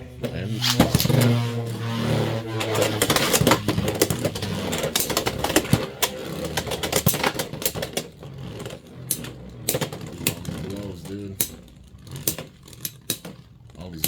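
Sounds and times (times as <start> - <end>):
spinning tops whirring: 0.0 - 13.7
tops clacking together: 2.6 - 13.8.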